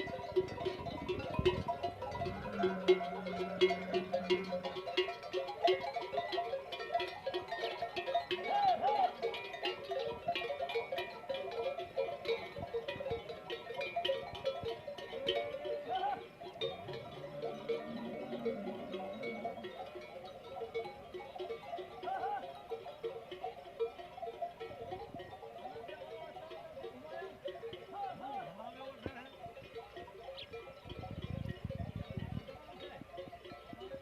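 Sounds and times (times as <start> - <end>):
livestock calls: 0.0 - 5.4, 15.1 - 23.4
camel bells jangling: 0.0 - 34.0.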